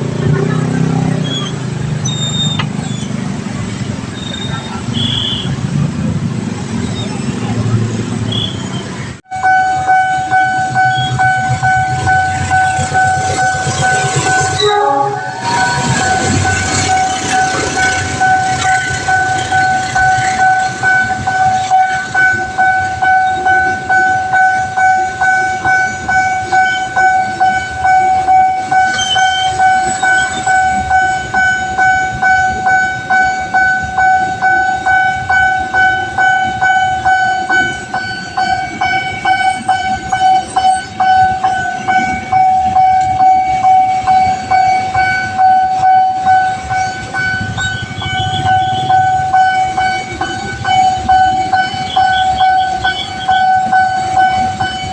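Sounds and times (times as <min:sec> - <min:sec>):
level crossing alarm two-note tone: 0:09.3 - 0:54.9
train wheels clattering on rails: 0:15.4 - 0:54.9.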